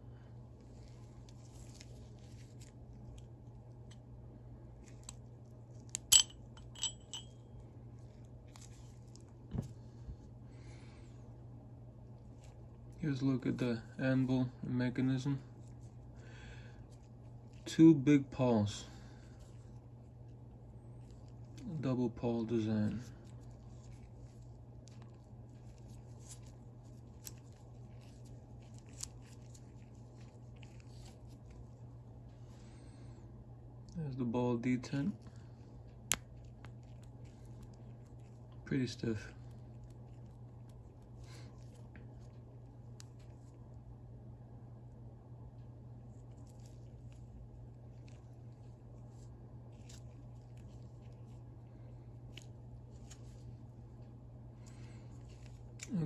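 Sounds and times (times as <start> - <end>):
steady low hum: 0.0 - 56.0
metal parts being handled: 6.0 - 7.3
ringing metallic clink: 6.1 - 7.3.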